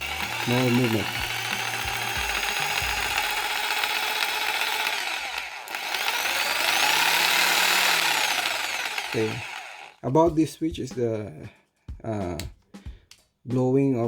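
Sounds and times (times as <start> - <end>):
jigsaw motor running: 0.0 - 10.0.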